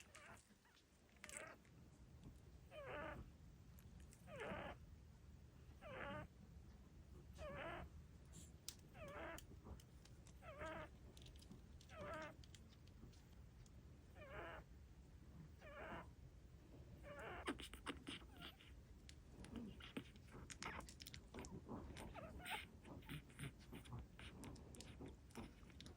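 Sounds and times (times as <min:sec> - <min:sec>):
puppy snoring squeakily: 0:02.7 - 0:03.3, 0:04.2 - 0:04.8, 0:05.8 - 0:06.3, 0:07.3 - 0:07.9, 0:08.9 - 0:09.4, 0:10.4 - 0:10.9, 0:11.9 - 0:12.4, 0:14.1 - 0:14.7, 0:15.6 - 0:16.1, 0:17.0 - 0:18.8, 0:19.5 - 0:25.9.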